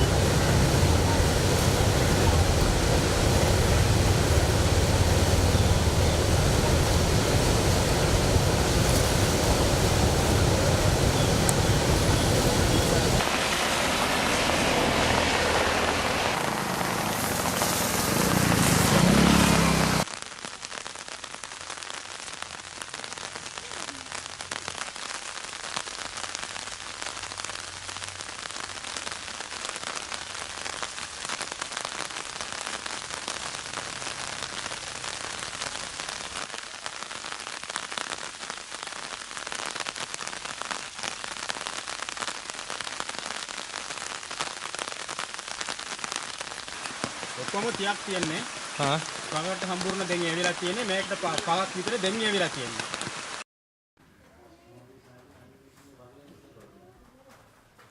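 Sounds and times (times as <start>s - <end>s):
loud even rushing noise: 0.0s - 20.0s
rain falling on a surface: 0.0s - 53.4s.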